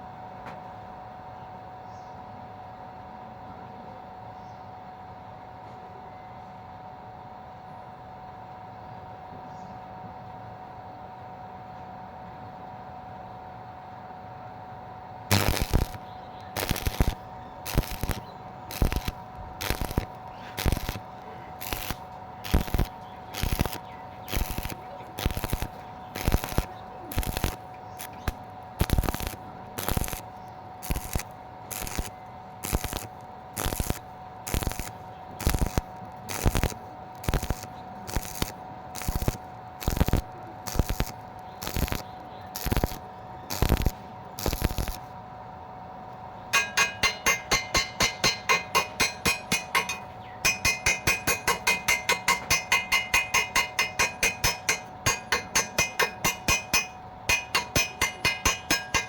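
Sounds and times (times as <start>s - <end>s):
faint steady hum: 0.0s - 59.0s
welding arc crackling: 15.3s - 45.2s, 46.6s - 59.0s.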